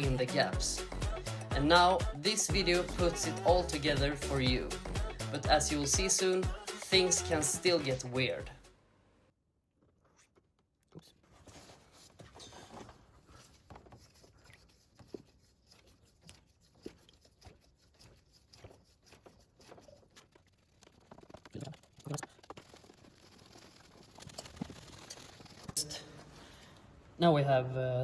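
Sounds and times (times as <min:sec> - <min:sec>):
fluid pouring from a bottle: 0:14.1 - 0:26.5.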